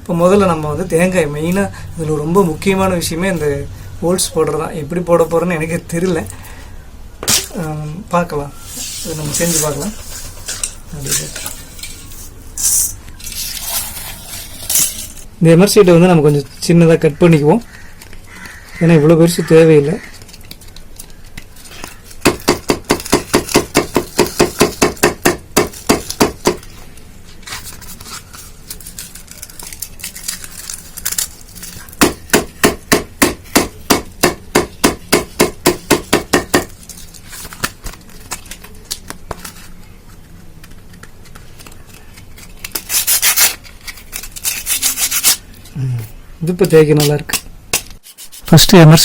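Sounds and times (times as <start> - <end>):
emery paper scraping strokes: 8.6 - 15.2, 41.0 - 45.4, 48.0 - 48.8.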